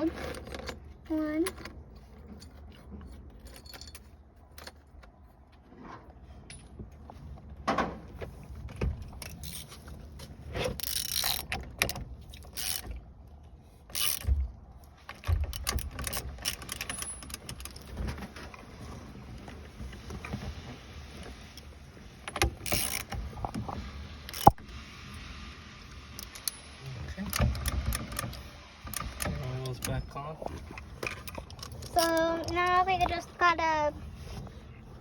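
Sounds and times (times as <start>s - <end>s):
metal parts clicking and rattling: 0.0s - 5.4s, 9.0s - 10.0s, 10.6s - 13.0s, 13.8s - 18.2s, 22.2s - 23.6s, 24.3s - 24.6s, 26.2s - 30.0s, 30.7s - 33.2s
knocks and scrapes: 0.0s - 13.0s, 13.6s - 24.6s.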